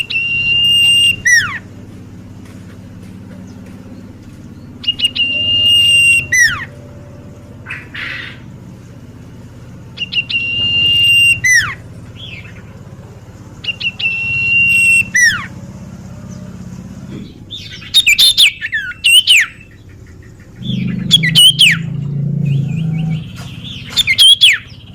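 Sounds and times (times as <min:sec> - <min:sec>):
songbird whistling: 0:00.0 - 0:01.8, 0:03.4 - 0:09.1, 0:09.9 - 0:12.7, 0:13.6 - 0:15.7, 0:17.2 - 0:24.9
low background hum: 0:00.0 - 0:24.9.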